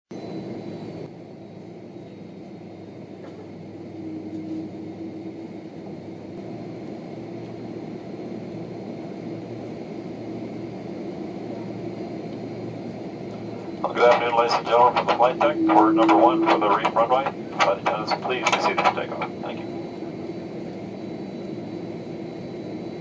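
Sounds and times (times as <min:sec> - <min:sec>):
faint high whine: 0:00.1 - 0:23.0
jet engines running: 0:00.1 - 0:23.0
air conditioning hum: 0:12.7 - 0:20.4.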